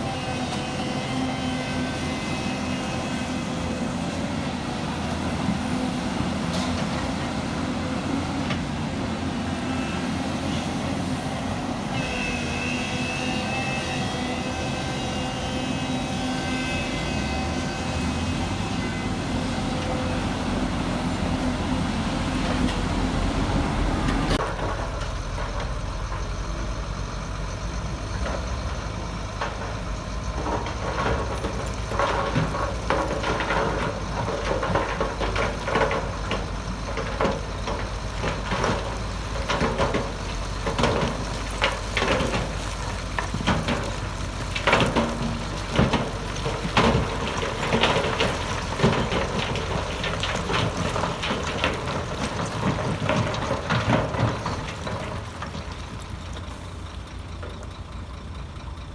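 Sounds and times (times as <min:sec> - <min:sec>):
diesel engine running: 0:00.0 - 0:58.9
stones knocking and clattering: 0:30.7 - 0:55.8.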